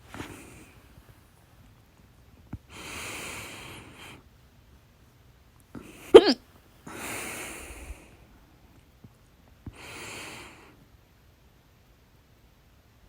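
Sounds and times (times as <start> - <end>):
slow breathy breaths: 2.7 - 4.2, 6.9 - 8.3, 9.7 - 10.8
woman hiccuping: 6.2 - 6.4.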